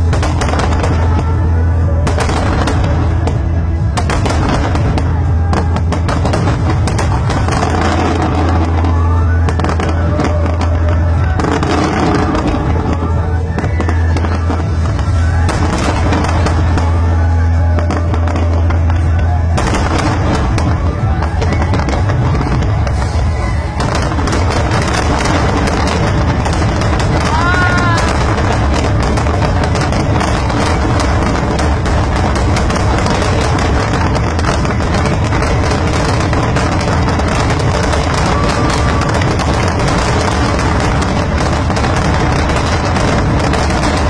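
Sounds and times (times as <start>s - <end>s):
fireworks bangs and crackles: 0.0s - 44.0s.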